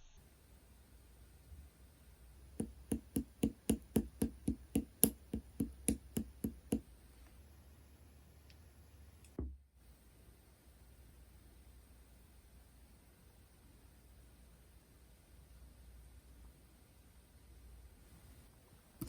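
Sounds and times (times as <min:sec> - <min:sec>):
taps on slime containers: 0:02.5 - 0:06.8.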